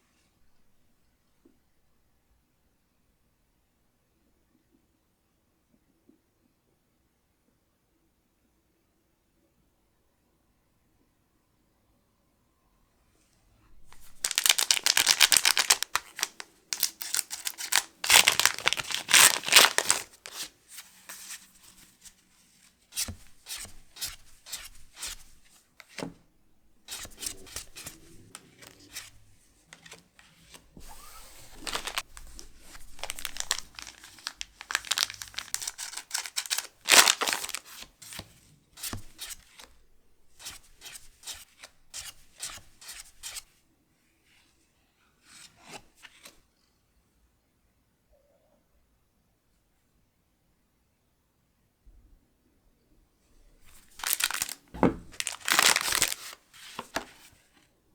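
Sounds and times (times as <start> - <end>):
foil wrappers tearing and crinkling: 14.0 - 20.5, 31.4 - 37.8, 53.9 - 57.1.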